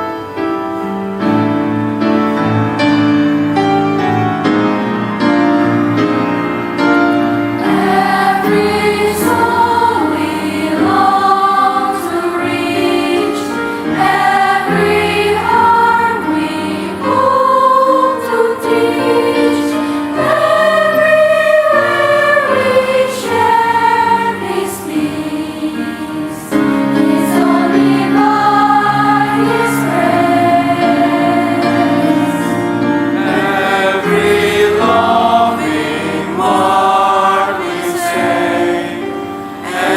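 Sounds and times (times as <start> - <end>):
choir singing praise song: 7.6 - 39.9.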